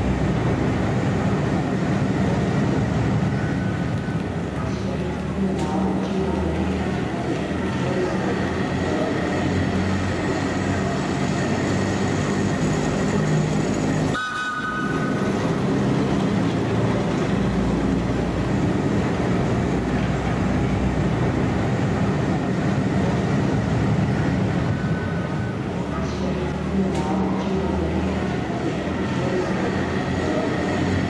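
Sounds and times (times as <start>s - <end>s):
train wheels on rails: 0.0s - 31.0s
locomotive whistle: 14.1s - 15.7s.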